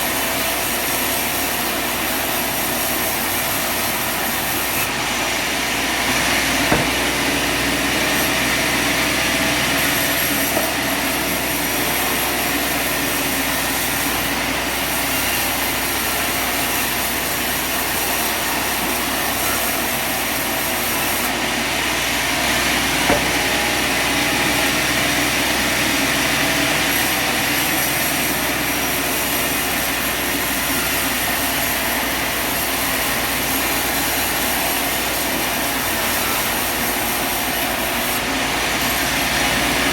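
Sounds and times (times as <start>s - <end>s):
sawmill machine running: 0.0s - 39.9s
brief knock: 6.7s - 7.1s, 23.1s - 23.4s.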